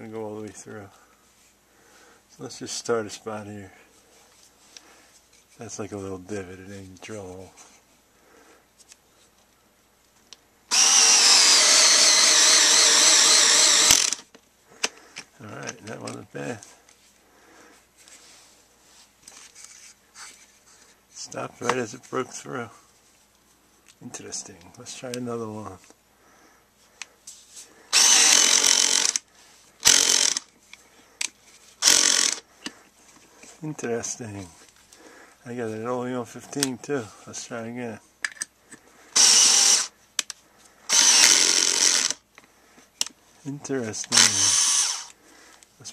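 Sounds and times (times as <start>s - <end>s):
cordless screwdriver driving screw: 10.7s - 14.3s, 27.9s - 29.2s, 29.8s - 30.5s, 31.8s - 32.4s, 39.2s - 39.9s, 40.9s - 42.2s, 44.0s - 45.2s.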